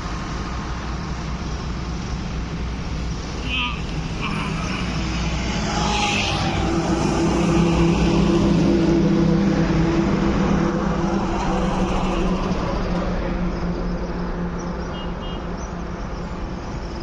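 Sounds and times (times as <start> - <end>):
train rumbling: 0.0 - 14.9.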